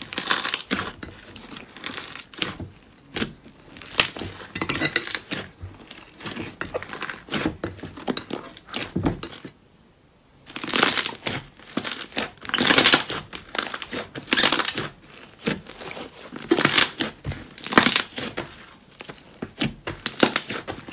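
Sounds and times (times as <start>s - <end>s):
slime crackling when squeezed: 10.5s - 18.3s.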